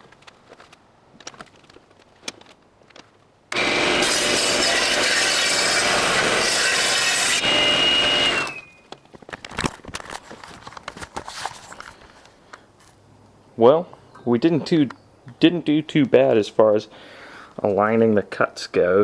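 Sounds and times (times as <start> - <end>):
saw blade whine: 3.5 - 8.7
table saw cutting log: 3.5 - 8.7.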